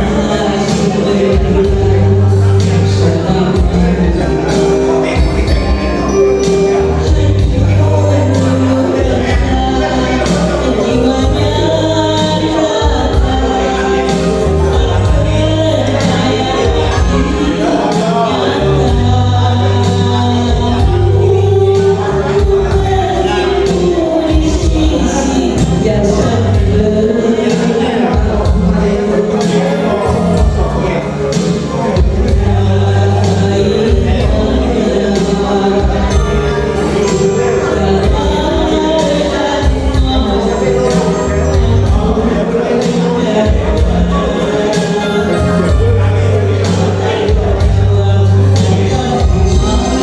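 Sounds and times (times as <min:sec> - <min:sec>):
singing over heavy bass: 0:00.0 - 0:50.0.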